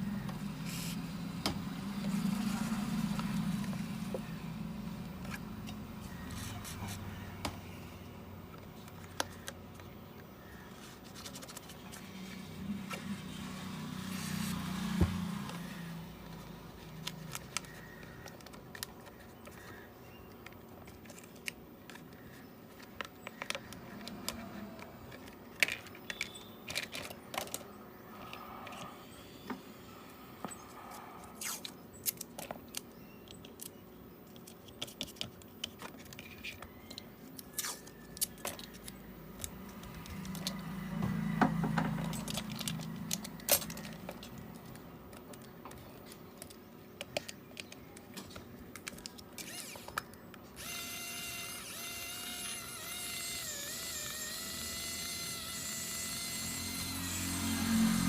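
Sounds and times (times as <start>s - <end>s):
low motor whir: 0.0s - 7.5s, 50.6s - 58.0s
tools clicking on a phone: 26.0s - 27.6s.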